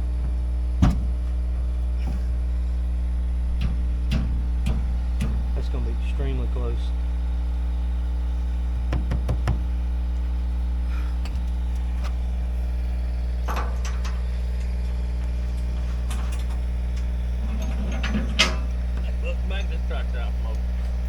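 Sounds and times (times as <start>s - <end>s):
tractor engine idling: 0.0s - 21.0s
short metallic knocks: 3.5s - 5.6s.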